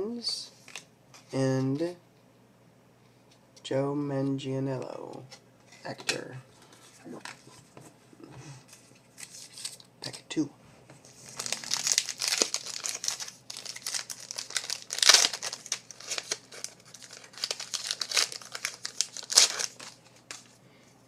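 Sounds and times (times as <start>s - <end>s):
wrapper tearing and crinkling: 11.2s - 20.5s.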